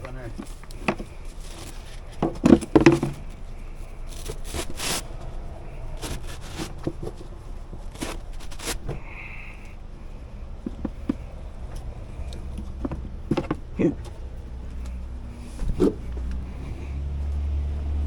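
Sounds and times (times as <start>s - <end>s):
scrapes and knocks on metal: 0.3s - 5.3s, 10.6s - 13.7s.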